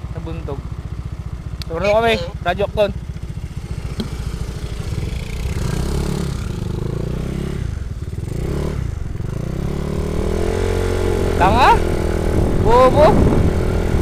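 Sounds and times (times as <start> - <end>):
motorcycle engine revving: 0.0 - 14.0.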